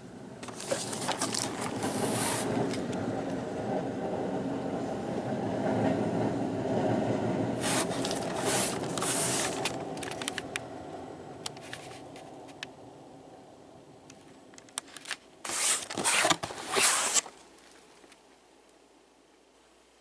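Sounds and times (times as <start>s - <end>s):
toy truck engine rumble: 0.4s - 3.4s, 7.6s - 10.6s
hiss bursts: 1.8s - 2.8s, 7.6s - 9.8s, 15.4s - 17.3s.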